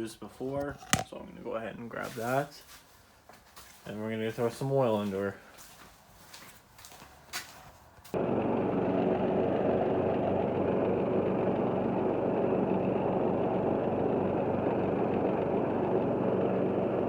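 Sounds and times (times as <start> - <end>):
lawn mower engine running: 8.2 - 17.0.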